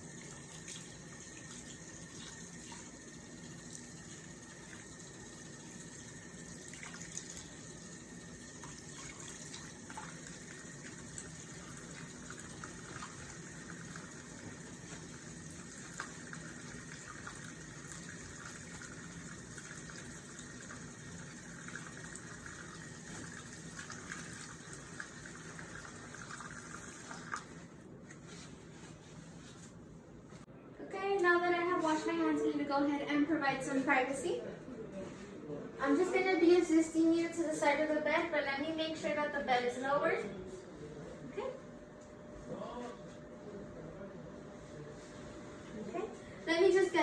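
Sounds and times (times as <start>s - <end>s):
faucet running: 0.0s - 27.6s.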